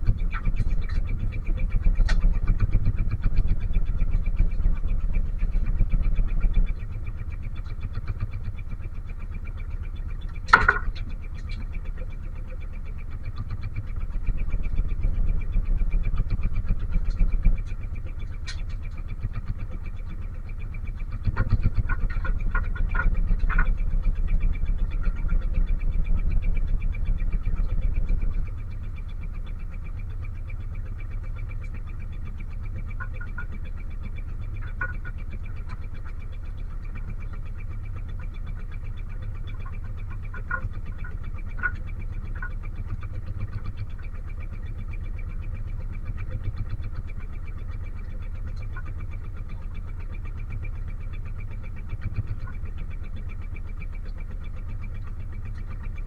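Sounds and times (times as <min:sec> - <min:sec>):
boat engine pulsing: 0:00.0 - 0:56.0
short clicks and knocks: 0:10.5 - 0:11.5.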